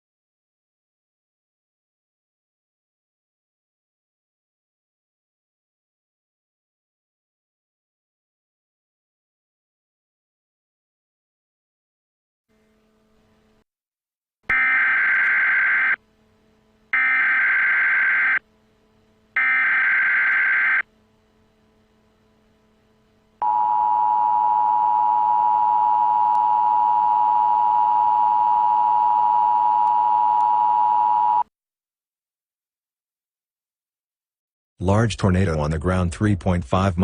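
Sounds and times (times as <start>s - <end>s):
buzzing data bursts: 14.5s - 26.1s.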